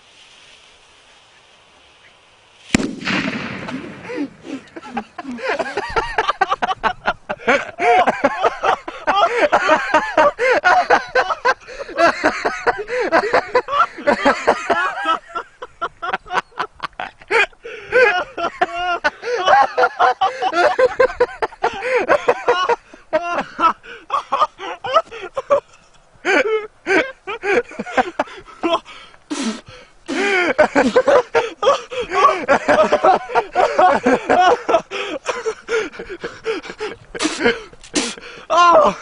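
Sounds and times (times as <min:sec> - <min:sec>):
firecracker blast: 0:02.6 - 0:04.5.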